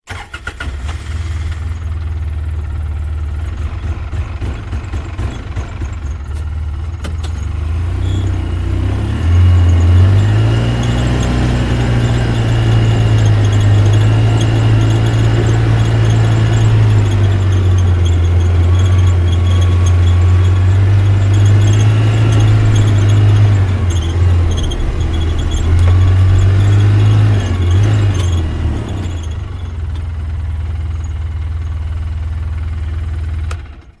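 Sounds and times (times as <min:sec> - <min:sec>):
car engine running: 0:01.1 - 0:33.5
thin high squeal: 0:09.2 - 0:29.9.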